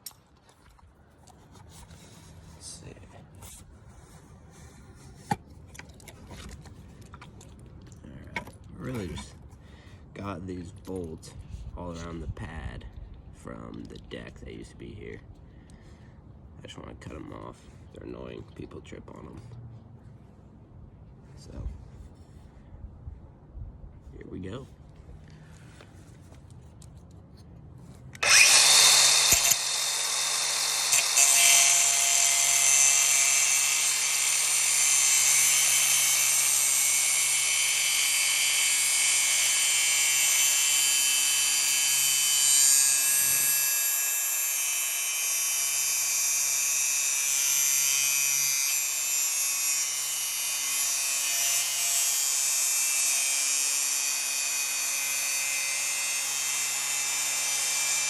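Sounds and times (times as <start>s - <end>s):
angle grinder cutting metal: 28.2s - 58.0s.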